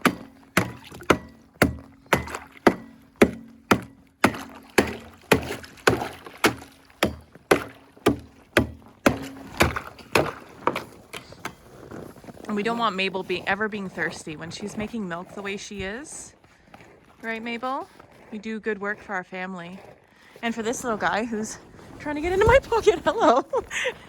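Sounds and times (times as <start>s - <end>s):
tool chopping ice: 0.0s - 11.6s.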